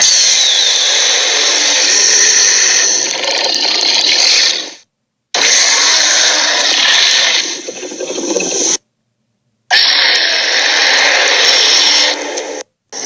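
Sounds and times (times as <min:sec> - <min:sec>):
dragon hissing roar: 0:09.7 - 0:12.6.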